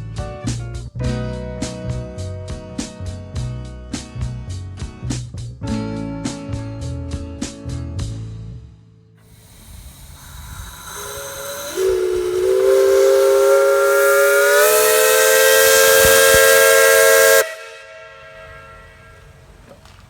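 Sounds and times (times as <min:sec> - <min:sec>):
steam hissing: 0:09.2 - 0:18.6
steam whistle blast: 0:09.3 - 0:19.5.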